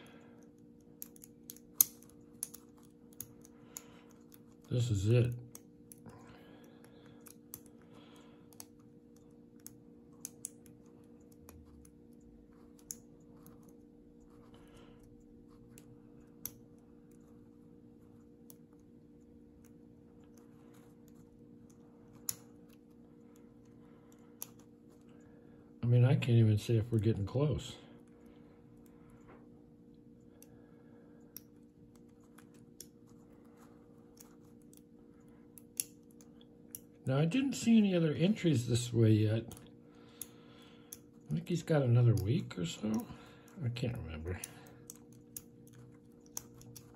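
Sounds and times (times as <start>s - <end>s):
faint steady hum: 0.0s - 46.9s
lock pick metallic clicks: 1.0s - 3.5s.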